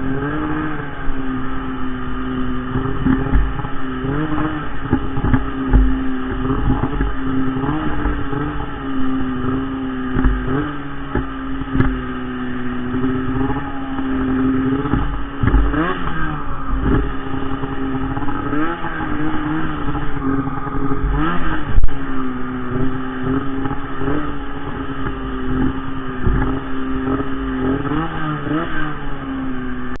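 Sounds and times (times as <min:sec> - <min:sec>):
snowmobile engine revving: 0:00.0 - 0:30.0.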